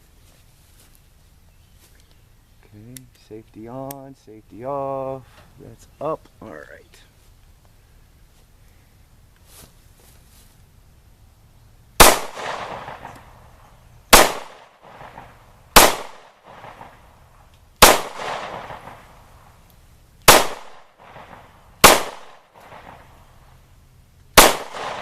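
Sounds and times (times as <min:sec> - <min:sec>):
pistol shots echoing: 0:12.0 - 0:13.3, 0:14.1 - 0:17.0, 0:17.8 - 0:19.1, 0:20.3 - 0:23.1, 0:24.4 - 0:25.0.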